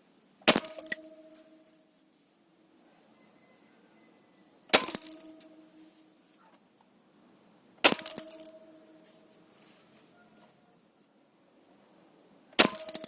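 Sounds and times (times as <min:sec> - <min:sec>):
airsoft rifle shots: 0:04.7 - 0:05.3, 0:07.8 - 0:08.5, 0:12.6 - 0:13.0
pellets striking nail with ringing: 0:04.7 - 0:05.8, 0:07.8 - 0:09.0, 0:12.6 - 0:13.0.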